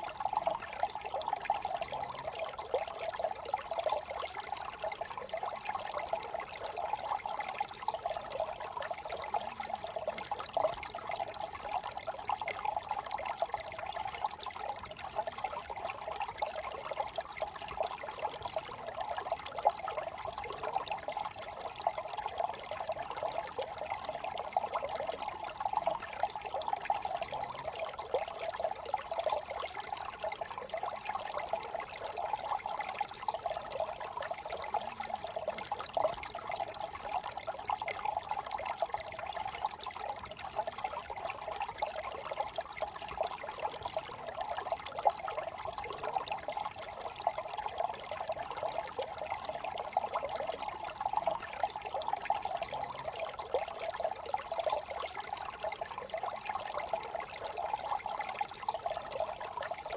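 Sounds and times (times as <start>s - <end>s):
brook babbling over stones: 0.0s - 59.9s.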